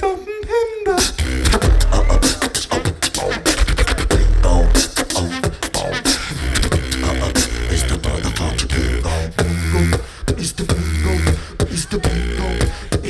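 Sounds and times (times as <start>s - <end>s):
beatboxing vocal drum hits: 0.0s - 13.0s
deep sustained bass tones: 1.2s - 2.3s, 4.1s - 4.8s
sung pitched lines: 1.2s - 7.9s.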